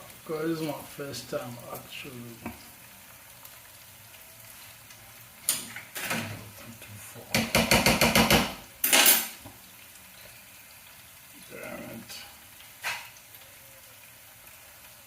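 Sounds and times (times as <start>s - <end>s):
utensils clattering on pots: 5.5s - 6.4s, 7.3s - 9.4s, 12.8s - 13.2s.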